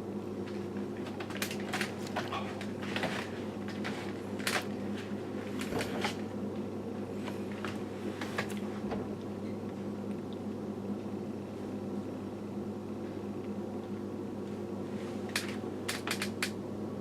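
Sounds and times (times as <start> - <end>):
low equipment hum: 0.0 - 17.0.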